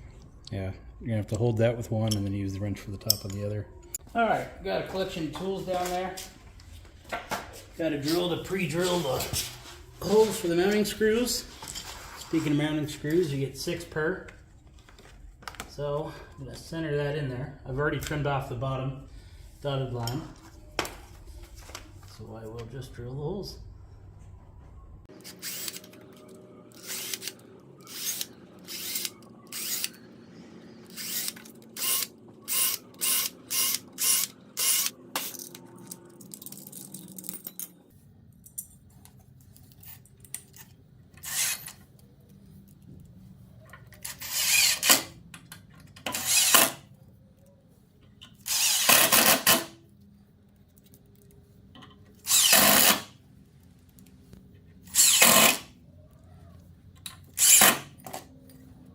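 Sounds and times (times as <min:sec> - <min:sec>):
power drill running: 0:25.2 - 0:25.9, 0:26.7 - 0:30.0, 0:30.9 - 0:35.0, 0:41.2 - 0:41.6, 0:44.0 - 0:45.0, 0:46.1 - 0:46.8, 0:48.4 - 0:49.7, 0:52.3 - 0:53.1, 0:54.9 - 0:55.6, 0:57.4 - 0:57.8.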